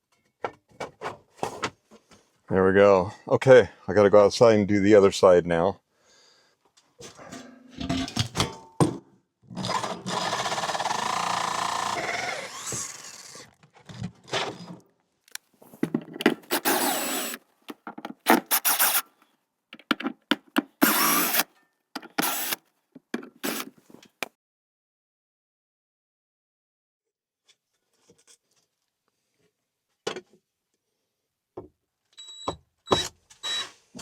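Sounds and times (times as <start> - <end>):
power drill with hole saw cutting: 9.6 - 13.5, 16.4 - 17.4, 18.3 - 19.0, 20.8 - 21.5, 22.1 - 22.6, 23.4 - 23.7, 32.9 - 33.7.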